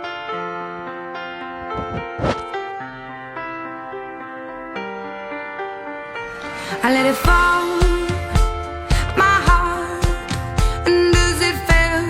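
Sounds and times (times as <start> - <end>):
person singing: 6.3 - 12.0.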